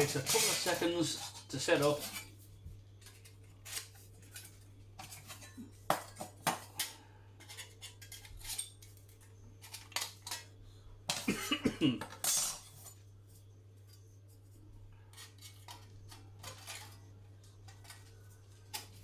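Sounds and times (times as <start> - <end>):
metal panels clinking: 0.0 - 2.3.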